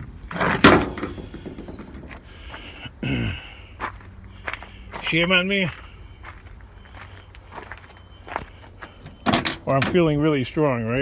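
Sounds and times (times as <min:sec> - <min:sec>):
faint footsteps: 0:00.8 - 0:02.8, 0:03.8 - 0:09.8.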